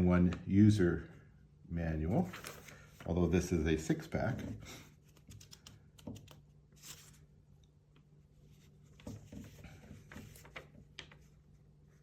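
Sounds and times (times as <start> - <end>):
paper rustling: 2.2 - 3.4, 4.3 - 7.3, 8.4 - 12.0.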